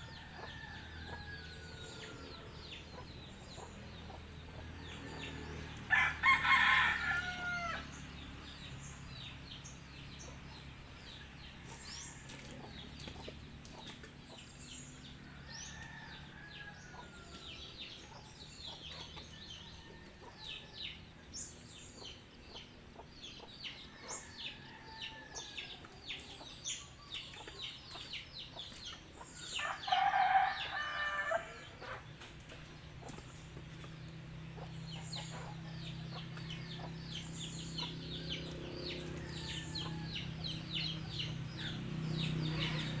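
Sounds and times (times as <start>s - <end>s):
rooster crowing: 0.0s - 2.8s, 5.2s - 8.0s, 15.3s - 17.7s, 23.9s - 25.8s, 29.4s - 32.0s, 38.8s - 41.8s
fowl chirping and clucking: 10.2s - 43.0s.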